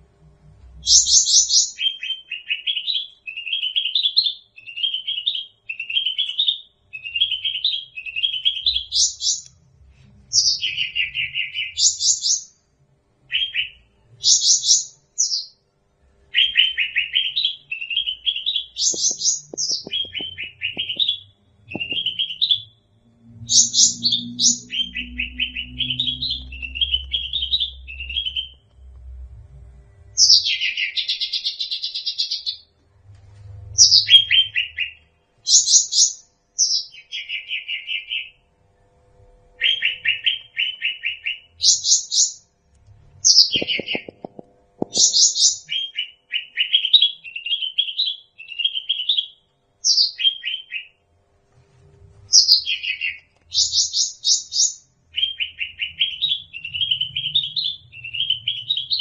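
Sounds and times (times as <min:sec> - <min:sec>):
songbird trilling: 0:18.3 - 0:22.6, 0:43.3 - 0:45.9.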